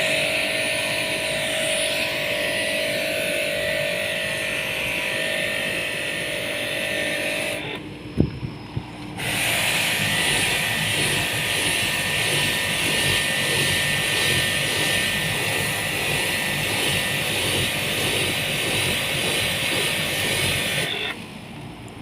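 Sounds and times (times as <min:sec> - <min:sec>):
pump motor running: 0:00.0 - 0:21.5
pressure washer spraying: 0:09.2 - 0:21.2.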